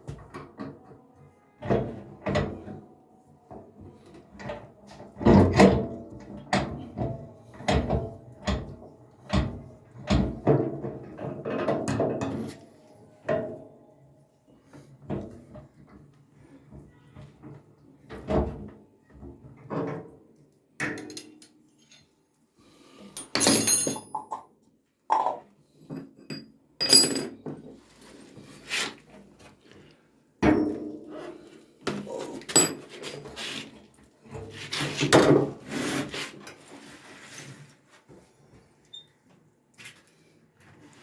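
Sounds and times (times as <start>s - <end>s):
tools and parts knocking and scraping: 4.3s - 12.6s, 20.8s - 22.2s, 23.0s - 24.5s, 25.1s - 27.8s, 30.4s - 36.7s.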